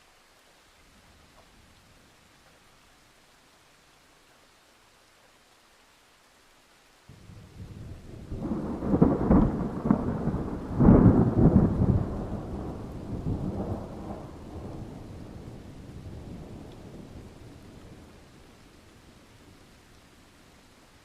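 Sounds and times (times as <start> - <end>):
thunder claps and rumble: 7.2 - 18.2.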